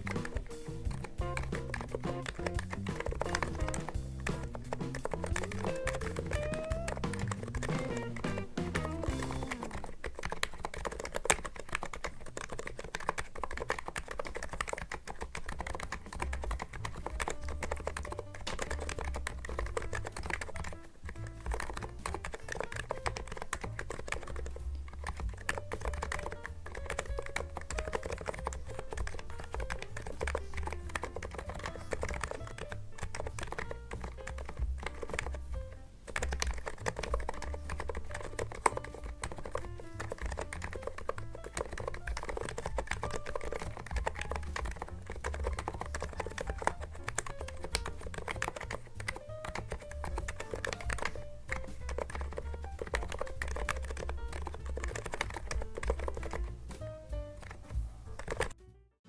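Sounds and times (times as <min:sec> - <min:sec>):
background music: 0:00.0 - 0:10.1, 0:14.4 - 0:59.0
fast keyboard typing: 0:00.0 - 0:58.6.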